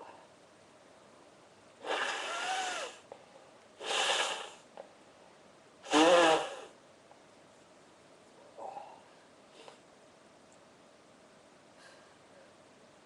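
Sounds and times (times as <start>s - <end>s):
person sneezing: 5.9s - 6.7s.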